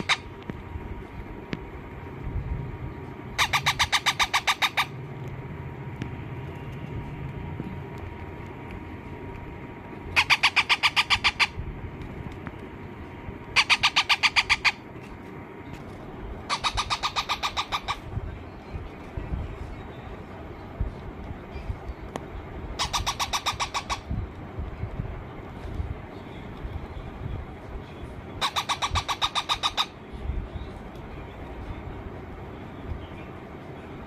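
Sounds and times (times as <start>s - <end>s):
steady low rumble: 0.0s - 34.0s
baby parrot harsh begging calls: 3.4s - 4.9s, 10.2s - 11.6s, 13.6s - 14.8s, 16.5s - 18.1s, 22.8s - 24.1s, 28.4s - 30.0s.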